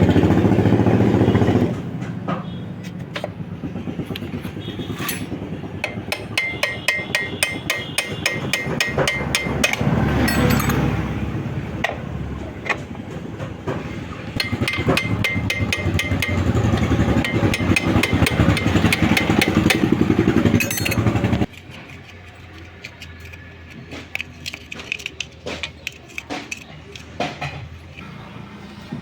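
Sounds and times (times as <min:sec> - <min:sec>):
motorcycle engine running: 0:00.0 - 0:12.2, 0:13.0 - 0:21.5.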